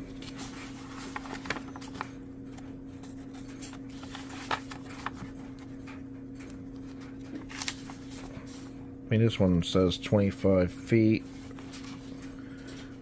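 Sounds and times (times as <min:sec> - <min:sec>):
low electrical hum: 0:00.0 - 0:13.0
paper and packaging rustling: 0:00.1 - 0:08.7, 0:11.3 - 0:12.9.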